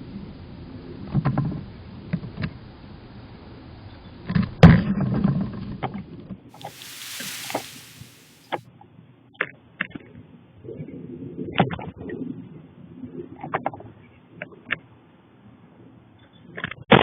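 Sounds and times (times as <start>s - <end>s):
hiss: 6.6s - 8.6s.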